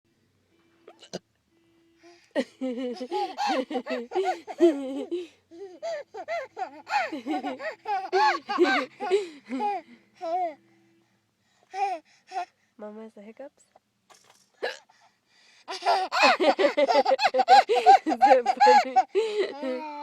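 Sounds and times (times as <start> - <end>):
young child laughing: 5.9 - 9.8, 15.7 - 20.0.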